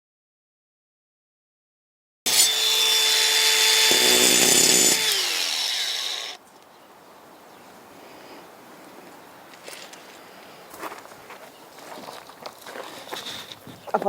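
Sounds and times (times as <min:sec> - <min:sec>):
electric power saw cutting: 0:02.3 - 0:06.4.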